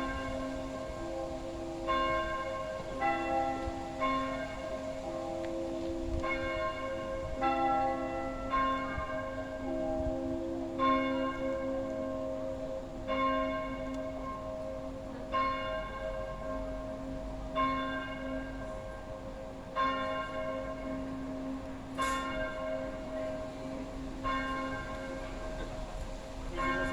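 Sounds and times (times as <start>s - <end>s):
church bell tolling: 0.0s - 26.9s.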